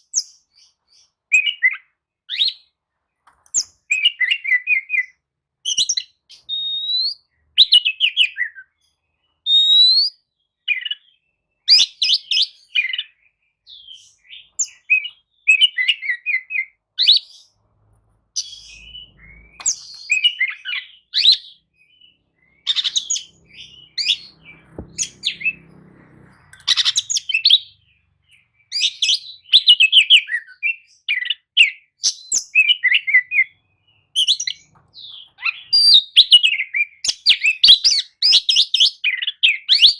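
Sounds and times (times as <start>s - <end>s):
bird singing chirps and trills: 18.4s - 39.9s.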